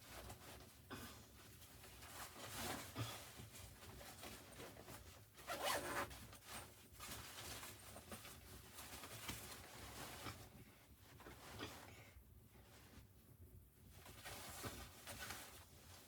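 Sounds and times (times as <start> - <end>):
zipper rasping: 5.5 - 6.1.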